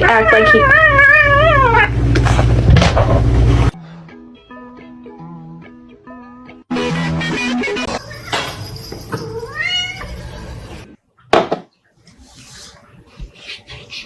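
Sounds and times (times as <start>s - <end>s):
cat meowing: 0.0s - 1.9s, 9.2s - 10.5s.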